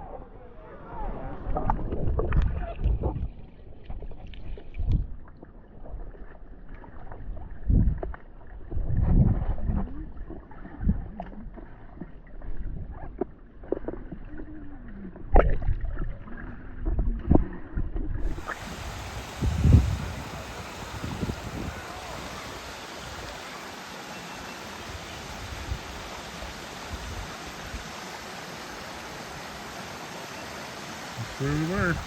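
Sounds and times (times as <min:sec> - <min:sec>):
muffled water sloshing and splashing: 0:01.0 - 0:32.0.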